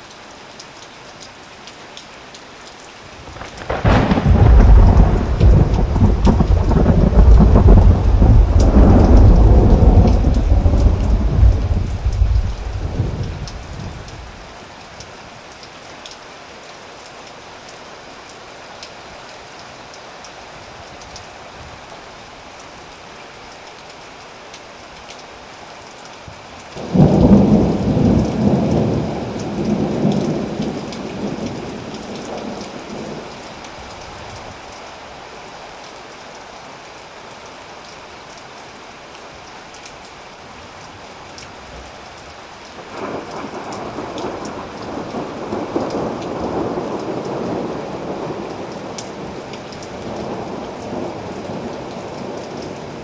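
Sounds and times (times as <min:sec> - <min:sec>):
steady rain: 0:00.0 - 0:53.0
raindrops ticking: 0:00.1 - 0:14.4, 0:25.9 - 0:33.8, 0:40.8 - 0:52.8
thunder rumbling: 0:03.4 - 0:14.0, 0:26.8 - 0:32.5.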